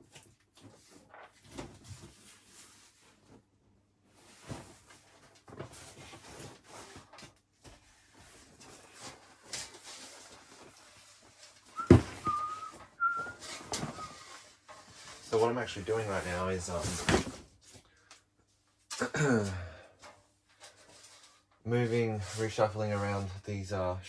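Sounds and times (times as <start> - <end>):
rustling and scraping on shelves: 0.0 - 19.0, 19.8 - 24.0
short wavering squeak: 11.8 - 14.2.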